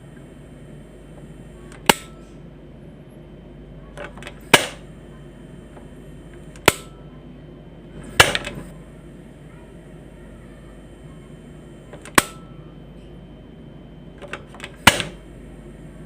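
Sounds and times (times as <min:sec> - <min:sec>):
stove knob clicking: 0:14.2 - 0:15.2.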